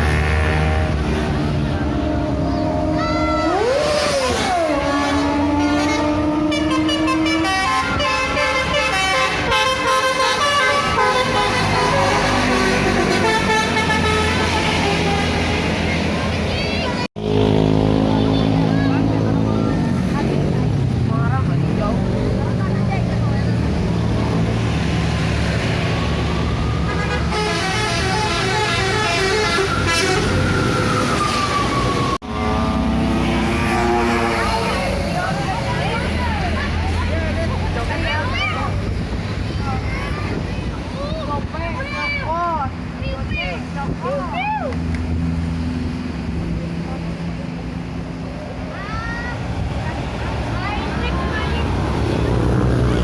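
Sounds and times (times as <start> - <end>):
bus engine rumble: 0.0 - 53.0
musical bus horn playing tune: 4.4 - 15.9, 26.9 - 30.8.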